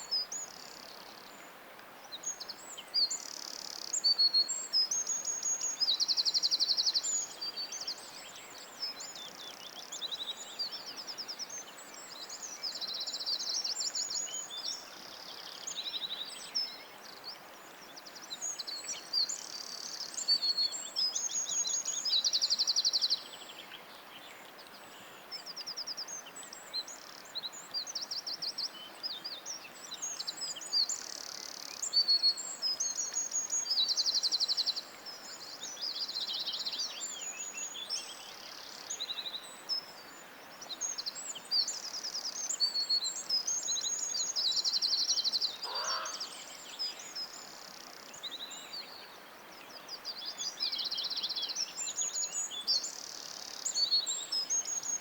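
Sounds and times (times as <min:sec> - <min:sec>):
songbirds singing: 0:00.0 - 0:55.0
steady background hiss: 0:00.0 - 0:55.0
short low bird call: 0:45.6 - 0:46.2.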